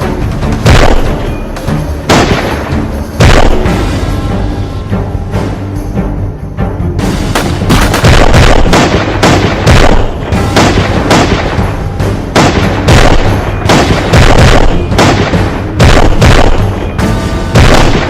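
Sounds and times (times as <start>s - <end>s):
music track with low bass: 0.0s - 18.0s
gunshots: 0.6s - 1.4s, 2.1s - 4.0s, 7.3s - 18.0s.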